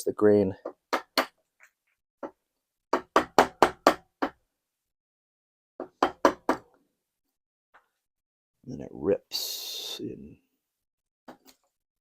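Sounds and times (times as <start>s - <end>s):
chisel knocking into wood: 2.2s - 4.4s, 5.8s - 6.7s.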